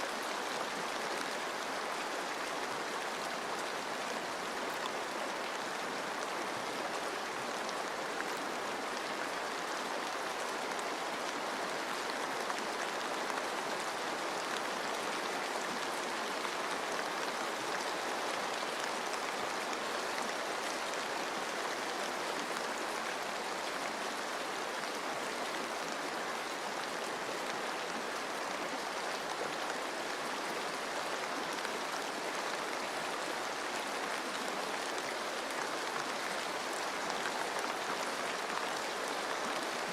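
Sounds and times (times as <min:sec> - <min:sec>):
rain on foliage: 0:00.0 - 0:39.9.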